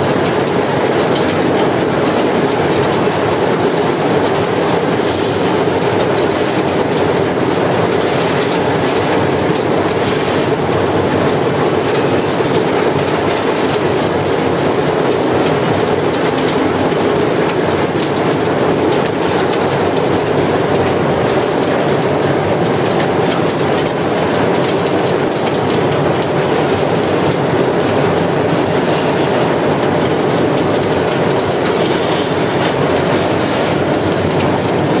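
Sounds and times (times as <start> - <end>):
industrial vacuum cleaner running: 0.0 - 35.0.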